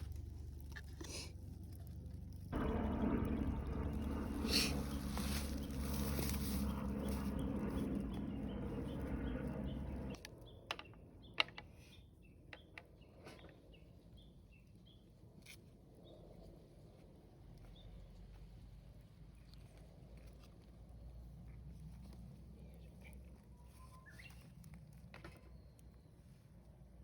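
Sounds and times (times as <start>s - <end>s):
low rumbling noise: 1.3s - 10.2s.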